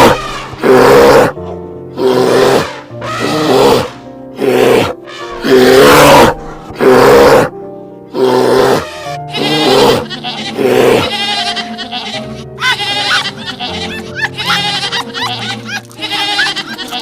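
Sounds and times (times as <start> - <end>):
large animal roaring: 0.0 - 1.4, 2.0 - 7.5, 8.1 - 10.0
background music: 0.0 - 17.0.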